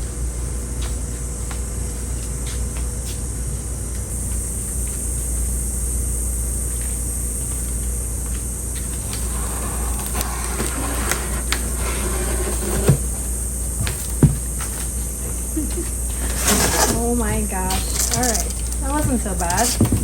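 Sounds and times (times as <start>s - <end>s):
rustling and scraping: 8.7s - 20.0s.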